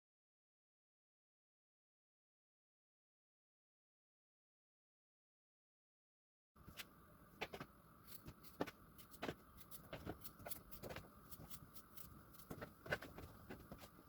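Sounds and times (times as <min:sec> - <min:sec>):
faint steady hum: 0:06.6 - 0:14.0.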